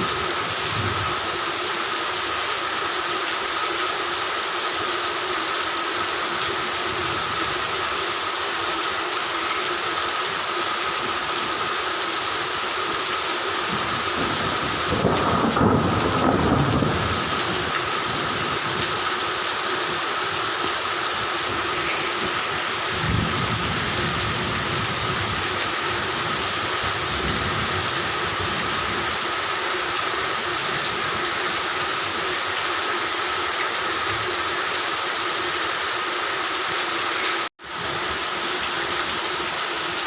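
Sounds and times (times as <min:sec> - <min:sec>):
steady rain: 0:00.0 - 0:40.0
thunder rumbling: 0:13.7 - 0:18.9, 0:22.2 - 0:25.6.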